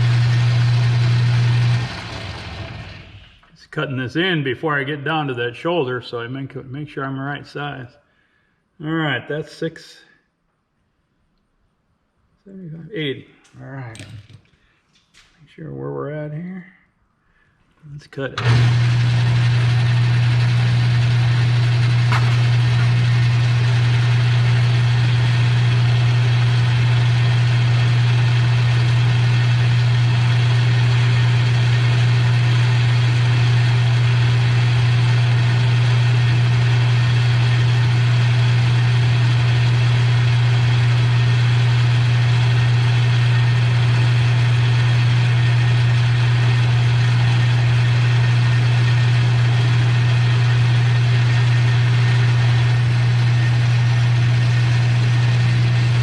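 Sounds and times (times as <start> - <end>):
metal lathe running: 0.0 - 3.4, 18.4 - 56.0.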